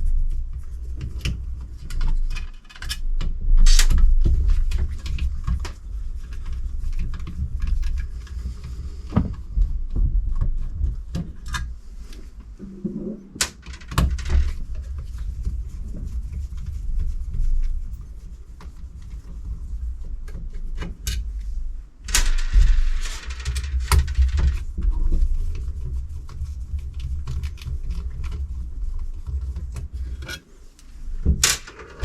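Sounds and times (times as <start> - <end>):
scrape: 3.7 - 9.9, 11.6 - 13.4, 14.1 - 32.0
low handling rumble: 4.2 - 13.4.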